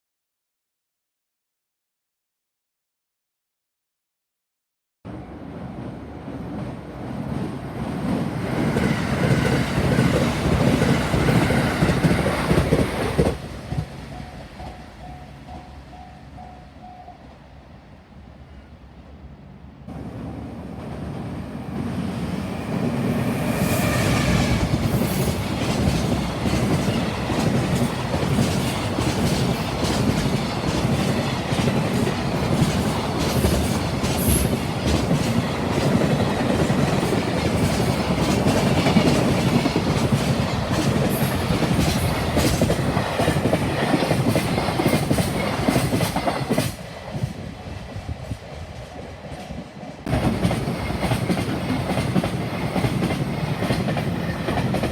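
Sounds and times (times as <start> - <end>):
train wheels clacking on rails: 7.3 - 17.0, 22.7 - 54.9.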